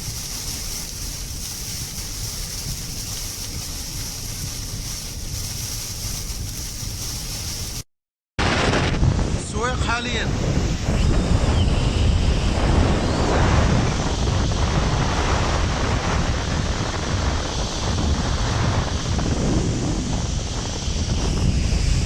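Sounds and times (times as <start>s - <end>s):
wind buffeting microphone: 0.0s - 7.8s, 8.4s - 22.0s
deep rumble: 8.4s - 22.0s.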